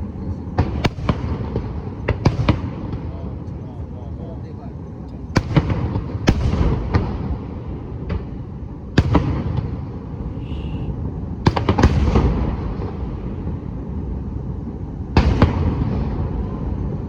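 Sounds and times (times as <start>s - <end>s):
fireworks bangs with echo: 0.5s - 3.7s, 5.3s - 13.8s, 15.1s - 17.0s.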